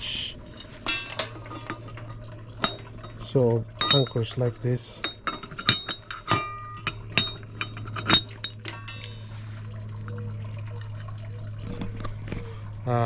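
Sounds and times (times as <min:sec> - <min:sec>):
steady low hum: 0:00.0 - 0:13.0
metal bracket pieces clinking: 0:00.4 - 0:09.4
short ringing metal clinks: 0:05.0 - 0:09.3.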